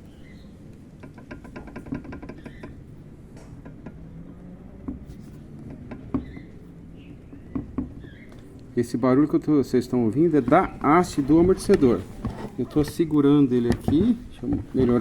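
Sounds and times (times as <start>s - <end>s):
shock absorber rod rattling: 1.0s - 8.8s, 9.9s - 15.0s
shock absorber knocks: 10.2s - 15.0s.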